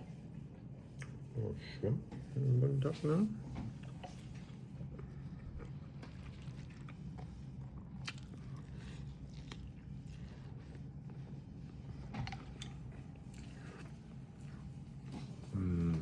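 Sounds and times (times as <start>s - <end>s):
steady low hum: 0.0s - 16.0s
person chewing food: 3.8s - 16.0s.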